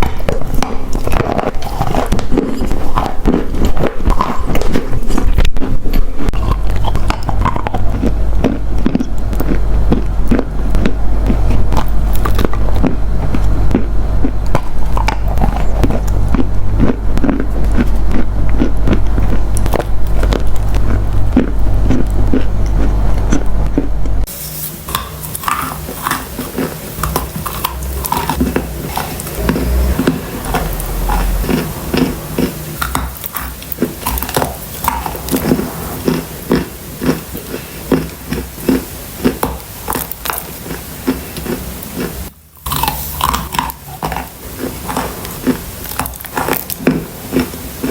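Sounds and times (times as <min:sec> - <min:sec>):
clay crunching while chewed: 0:00.0 - 0:24.3, 0:24.9 - 0:47.9
low hum: 0:00.0 - 0:37.8.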